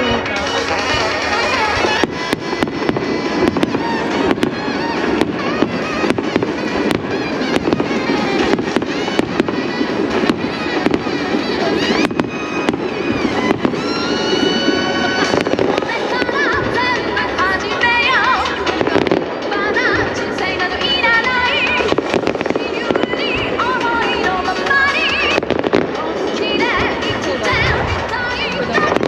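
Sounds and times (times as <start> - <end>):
fireworks cracking and banging: 0.0 - 29.0
music: 0.0 - 29.0.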